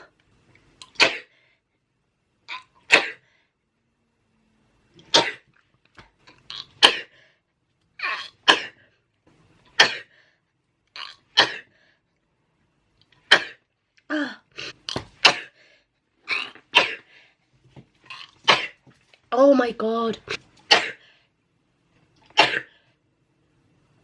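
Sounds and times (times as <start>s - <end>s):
person sneezing: 0.9s - 1.4s, 2.9s - 3.3s, 8.1s - 8.8s, 9.8s - 10.2s, 11.3s - 11.7s, 13.3s - 15.6s, 16.7s - 17.1s, 18.4s - 18.8s, 20.3s - 21.1s, 22.3s - 22.8s.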